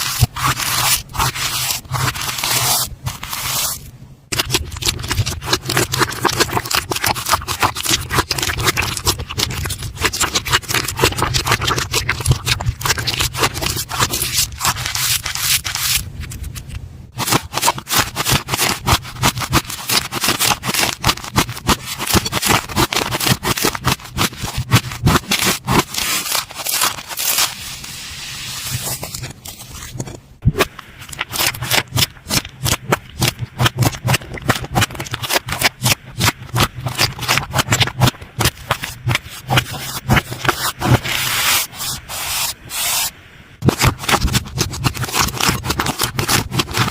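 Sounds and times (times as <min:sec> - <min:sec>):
slime crackling and popping: 0:04.3 - 0:16.0, 0:17.2 - 0:27.6, 0:30.5 - 0:41.1.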